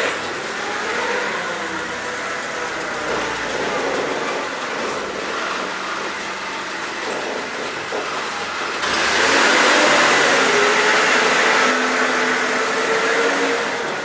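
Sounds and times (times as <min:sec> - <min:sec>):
motor running with whine: 0:00.0 - 0:05.7, 0:08.8 - 0:14.0.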